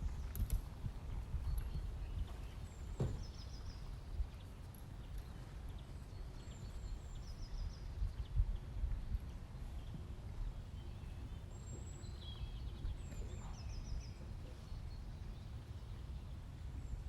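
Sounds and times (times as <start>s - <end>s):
low wind rumble: 0.0s - 17.0s
small bird singing: 10.7s - 17.0s.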